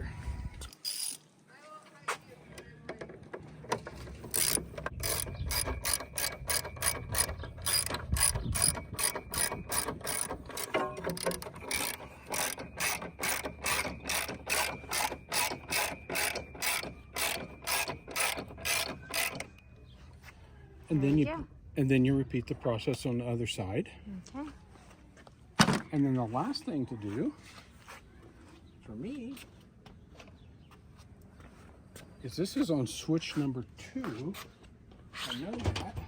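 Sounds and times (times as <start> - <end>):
ratchet wrench clicking: 0.7 - 1.2, 4.2 - 19.6
tool handling: 2.6 - 19.7.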